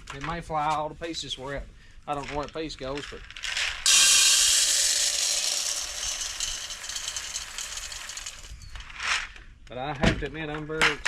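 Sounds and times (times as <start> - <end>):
corn kernels rattling into hopper: 3.5 - 8.6.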